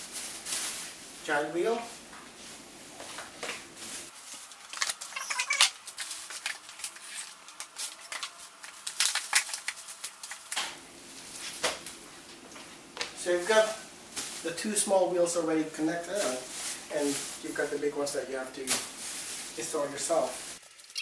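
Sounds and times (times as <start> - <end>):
plastic packaging crackling: 0.0 - 2.1, 3.8 - 11.8, 18.5 - 21.0.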